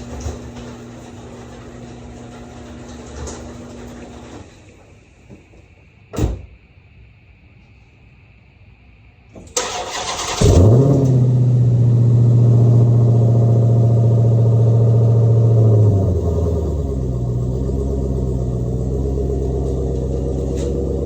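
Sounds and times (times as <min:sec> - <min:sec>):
car engine revving and idling: 0:10.0 - 0:21.0.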